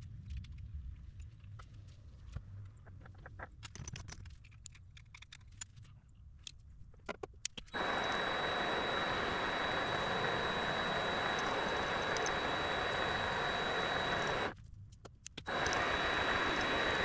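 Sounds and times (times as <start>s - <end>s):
workshop machine whining: 7.8s - 14.5s, 15.5s - 17.0s.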